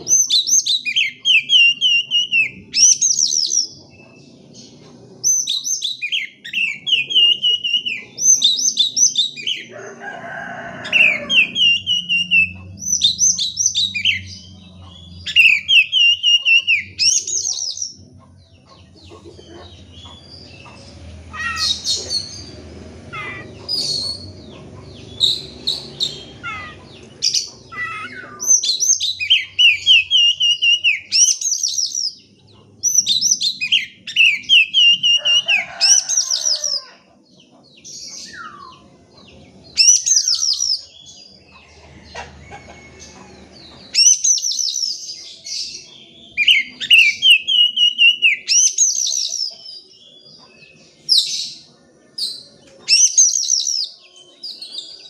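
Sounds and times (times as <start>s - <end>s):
bird singing whistles and trills: 0.1s - 3.8s, 5.3s - 9.7s, 11.0s - 18.0s, 25.1s - 32.2s, 32.9s - 35.6s, 39.7s - 41.1s, 43.9s - 49.7s.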